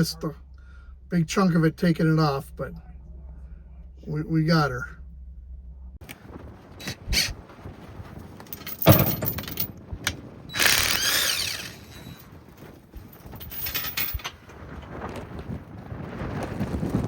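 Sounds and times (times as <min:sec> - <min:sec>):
wrench ratcheting and grinding: 0:10.5 - 0:12.2.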